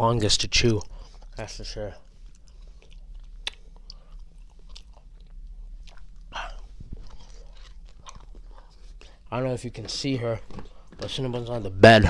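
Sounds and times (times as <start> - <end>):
person chewing gummies: 2.0 - 11.1.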